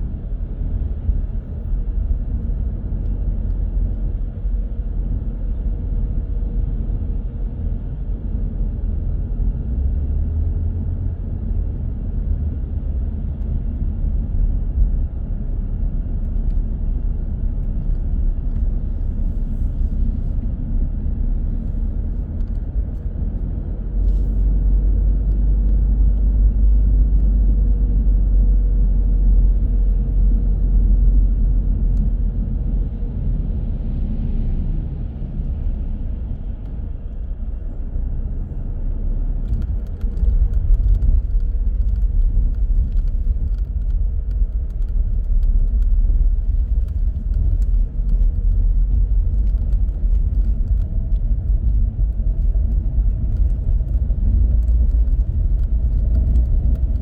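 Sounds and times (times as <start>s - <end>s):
car engine and road rumble: 0.0s - 57.0s
small clicks and rattles: 39.4s - 57.0s.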